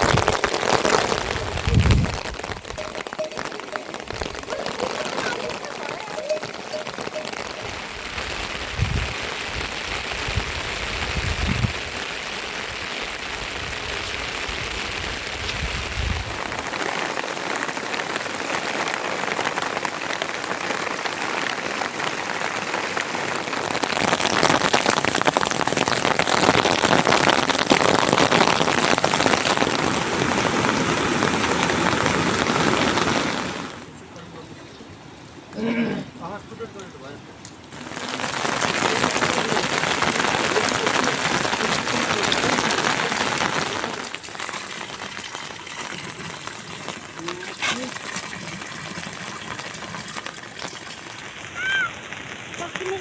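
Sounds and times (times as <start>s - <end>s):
heavy rain pattering: 0.0s - 53.0s.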